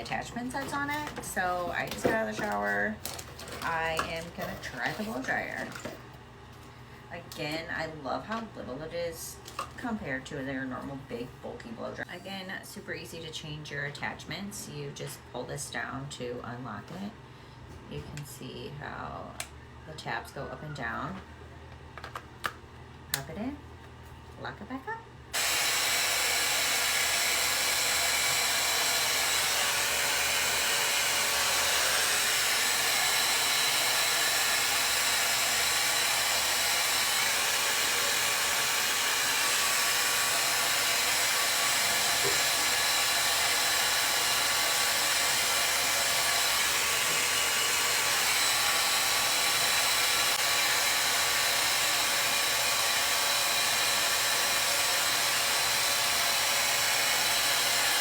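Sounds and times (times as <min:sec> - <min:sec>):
hair dryer running: 0:00.0 - 0:06.0, 0:25.4 - 0:58.0.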